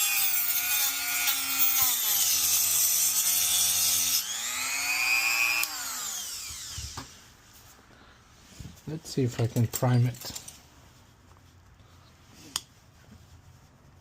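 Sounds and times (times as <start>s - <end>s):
rotary tool cutting plastic: 0.0s - 7.2s.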